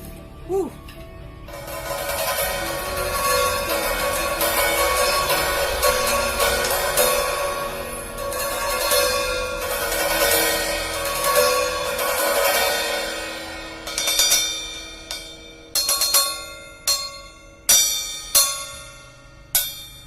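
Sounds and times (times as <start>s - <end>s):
cymbals struck: 1.5s - 20.0s.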